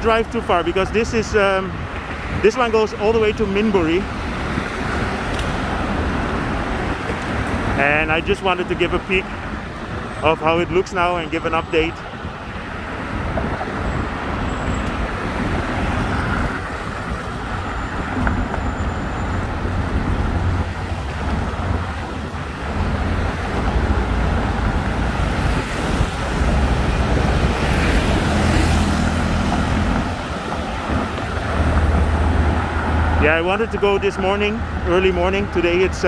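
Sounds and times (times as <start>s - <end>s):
road traffic rumble: 0.0s - 36.0s
vehicle passing close: 19.2s - 33.4s.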